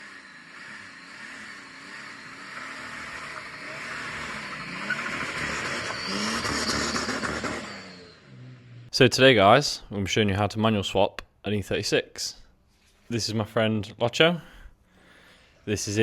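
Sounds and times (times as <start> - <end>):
car engine: 0.0 - 9.0
road noise: 0.0 - 9.0.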